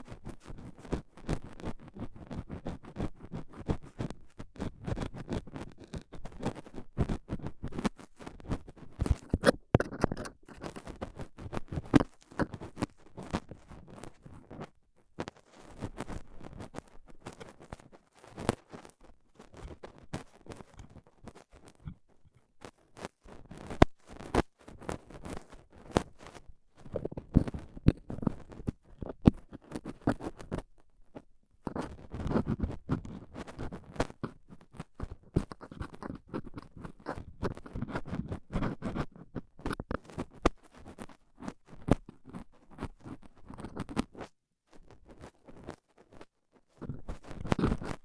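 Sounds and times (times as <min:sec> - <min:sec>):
metal tool scraping in ear: 0:09.2 - 0:10.8.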